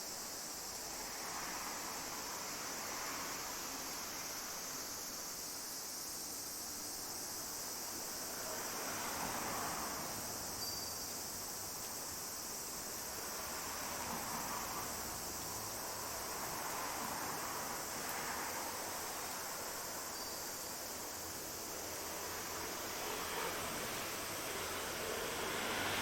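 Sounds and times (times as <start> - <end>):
high-pitched insect chorus: 0.0 - 26.0.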